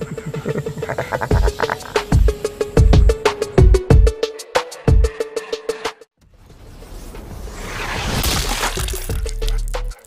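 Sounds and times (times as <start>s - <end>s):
fast electronic beat: 0.0s - 4.1s.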